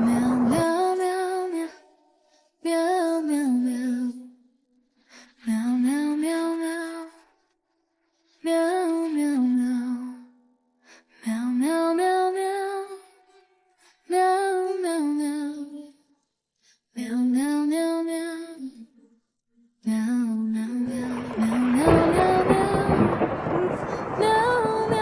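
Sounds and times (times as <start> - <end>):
woman singing lullaby melody: 0.0 - 1.8, 2.6 - 4.2, 19.9 - 25.0
loud rushing noise: 20.9 - 25.0.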